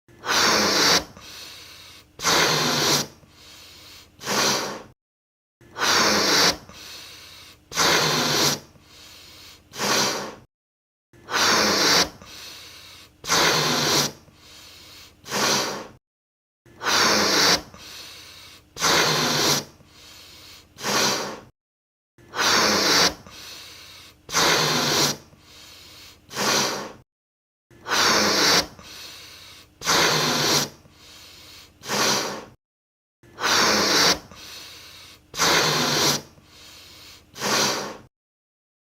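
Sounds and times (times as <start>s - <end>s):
puffs of breath into balloon: 0.1s - 5.0s, 5.6s - 10.5s, 11.2s - 16.0s, 16.7s - 21.5s, 22.2s - 27.0s, 27.7s - 32.6s, 33.2s - 38.1s
quiet breathing: 1.1s - 2.2s, 3.1s - 5.0s, 6.5s - 7.7s, 8.5s - 10.5s, 12.2s - 13.2s, 14.1s - 16.0s, 17.7s - 18.8s, 19.6s - 21.5s, 23.2s - 27.0s, 27.7s - 32.6s, 34.1s - 38.1s.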